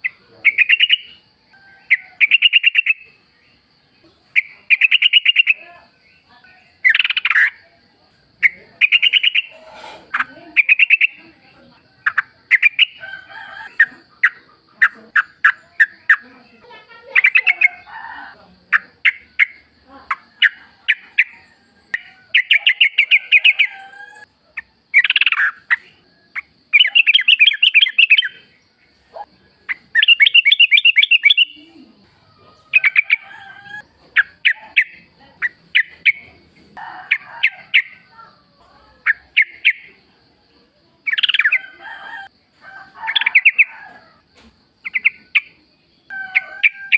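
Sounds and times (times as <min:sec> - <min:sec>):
bird singing bubbly chattering notes: 0:29.7 - 0:31.6.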